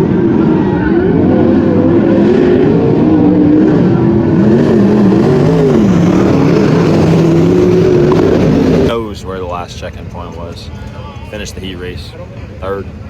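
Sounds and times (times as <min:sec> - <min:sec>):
sprint car engines racing: 0:00.0 - 0:09.0.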